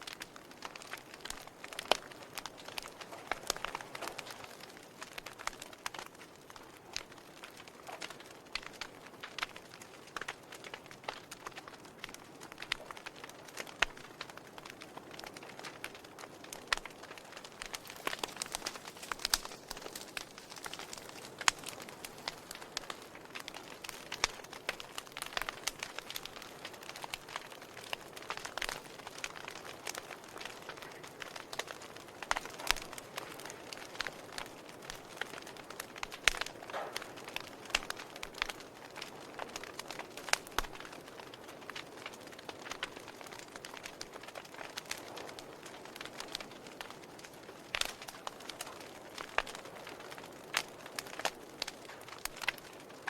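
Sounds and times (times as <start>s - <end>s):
fire crackling and popping: 0.0s - 53.0s
soft steady hiss: 0.0s - 53.0s.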